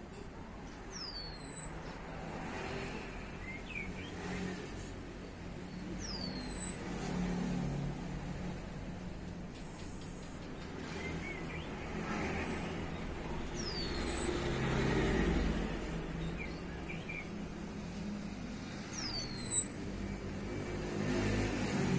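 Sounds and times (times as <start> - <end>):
bird whistles: 0.9 - 1.9, 5.9 - 6.8, 13.4 - 14.4, 18.8 - 19.8.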